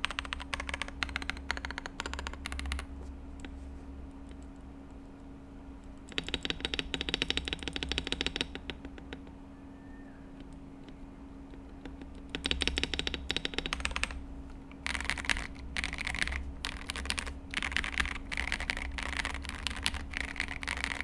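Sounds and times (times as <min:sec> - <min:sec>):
mechanical keyboard key clacks: 0:00.0 - 0:02.9, 0:06.1 - 0:09.2, 0:11.5 - 0:14.2, 0:14.8 - 0:21.0.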